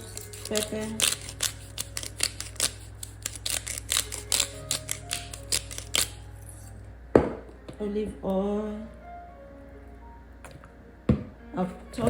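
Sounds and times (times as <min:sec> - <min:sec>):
pepper mill grinding: 0:00.0 - 0:06.7.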